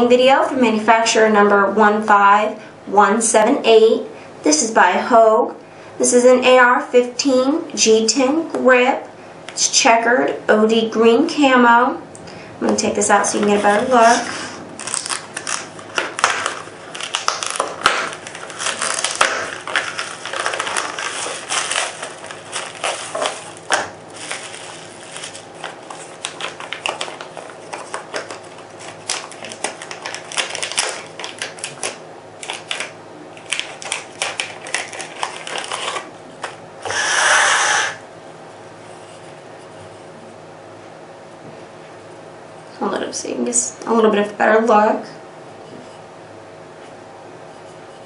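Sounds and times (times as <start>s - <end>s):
packaging rustling and crackling: 13.4s - 36.6s.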